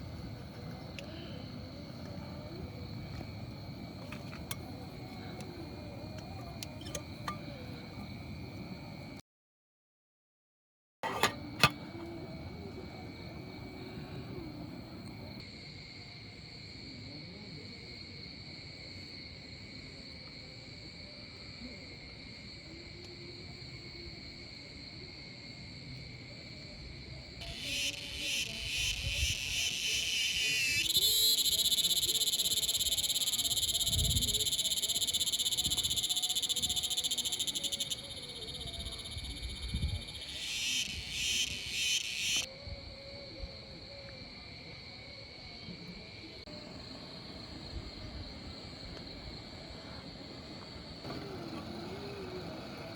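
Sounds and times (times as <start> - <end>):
high-pitched animal trilling: 27.4 - 42.5
rapidly pulsing animal chorus: 27.5 - 39.4, 51.0 - 52.9.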